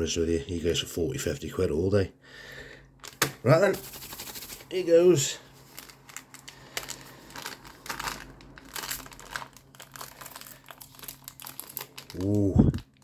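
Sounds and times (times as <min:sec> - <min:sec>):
plastic pack tearing and crinkling: 0:05.6 - 0:13.0.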